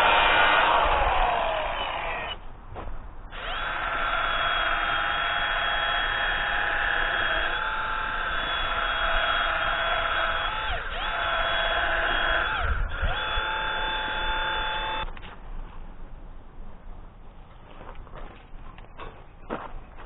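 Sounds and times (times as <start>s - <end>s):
angle grinder whining: 0.0s - 2.4s, 3.3s - 15.1s.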